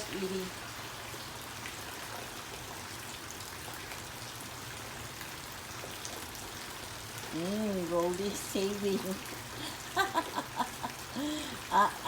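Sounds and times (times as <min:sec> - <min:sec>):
rain hissing: 0:07.3 - 0:12.0.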